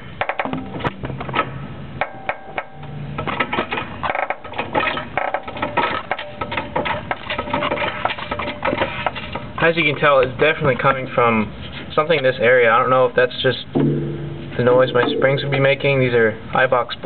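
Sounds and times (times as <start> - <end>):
car suspension creaking: 0.0 - 9.7
jack clicking and metal sounds: 0.2 - 9.6.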